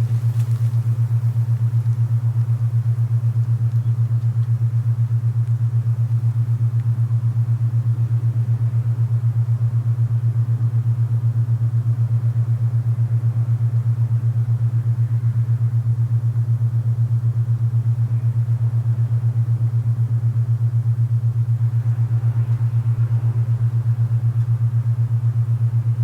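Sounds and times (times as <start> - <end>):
soft hiss of wind: 0.0 - 3.5, 21.5 - 26.0
low pulsing tone: 0.0 - 26.0.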